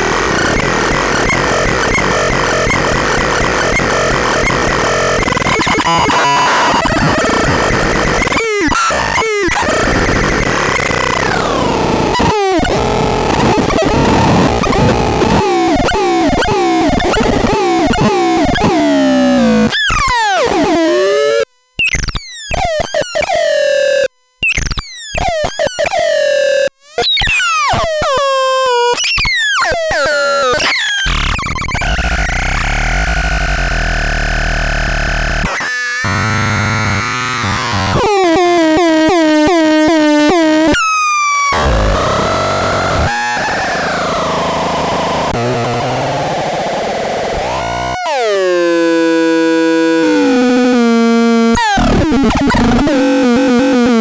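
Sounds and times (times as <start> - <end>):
buzzy synth drone: 31.1 - 40.8, 41.5 - 54.0.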